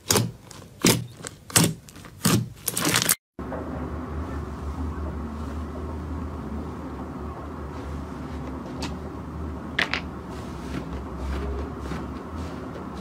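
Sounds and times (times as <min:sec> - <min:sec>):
steady low hum: 0:03.4 - 0:13.0.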